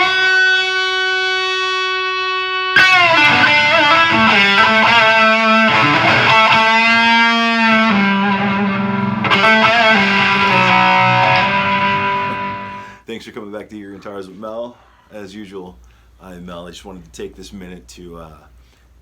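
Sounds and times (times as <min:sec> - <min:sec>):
distorted electric guitar: 0:00.0 - 0:13.0.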